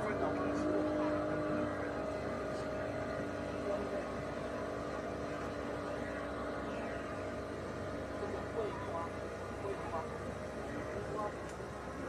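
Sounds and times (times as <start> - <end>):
boat engine running: 0.0 - 12.0.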